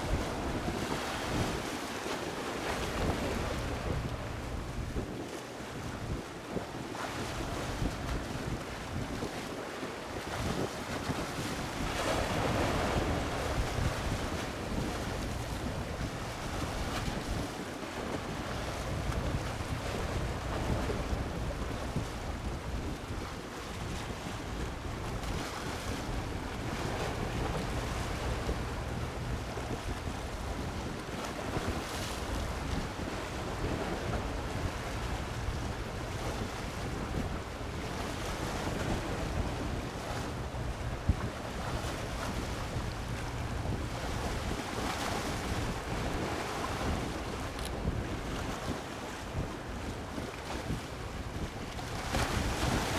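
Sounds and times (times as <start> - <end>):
wind rumbling on microphone: 0.0 - 1.9, 2.5 - 52.9
sea waves washing in: 9.8 - 22.7, 24.4 - 49.0.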